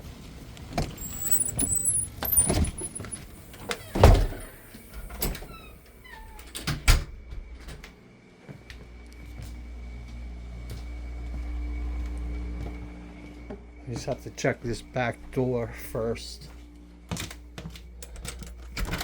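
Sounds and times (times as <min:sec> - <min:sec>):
high squeaks: 0:00.8 - 0:06.1
door thumps and knocks: 0:03.9 - 0:04.6.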